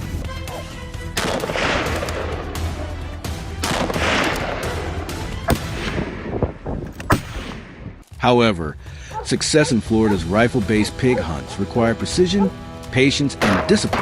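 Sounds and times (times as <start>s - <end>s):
background music: 0.0s - 14.0s
rifle shots: 7.1s - 7.8s.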